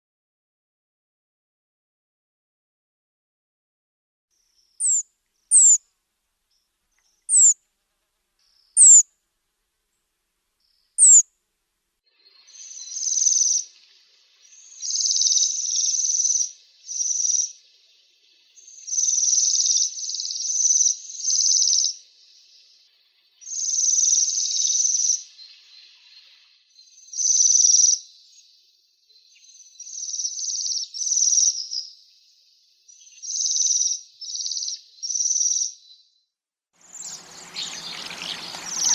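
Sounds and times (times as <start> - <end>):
high buzzy bird trills: 4.8 - 5.8, 7.3 - 7.6, 8.8 - 9.0, 11.0 - 11.2.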